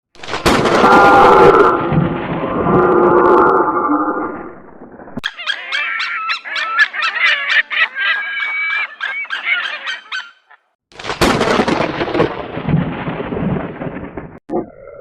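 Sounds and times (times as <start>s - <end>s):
rough noisy animal call: 0.7s - 1.9s, 5.2s - 10.7s
animal repeated pitched cries: 5.2s - 10.8s.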